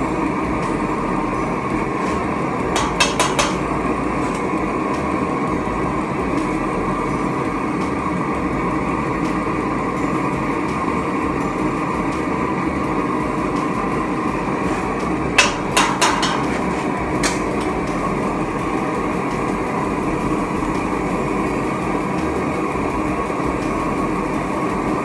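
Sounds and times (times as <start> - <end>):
furnace rushing: 0.0 - 25.0
sharp metallic knocks: 0.1 - 8.0, 12.9 - 24.2.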